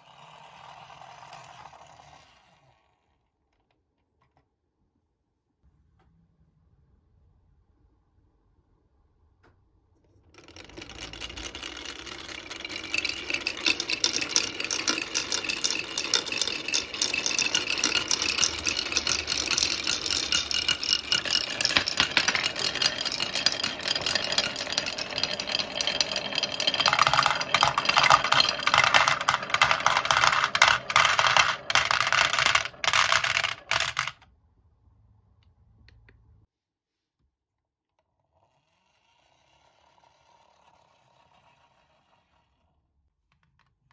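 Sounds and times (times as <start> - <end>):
marbles rattling down wooden run: 10.4 - 34.2.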